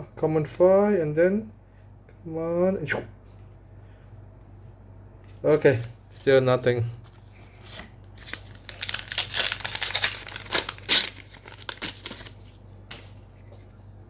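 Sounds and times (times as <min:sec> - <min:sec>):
wrapper tearing and crinkling: 0:07.7 - 0:13.2.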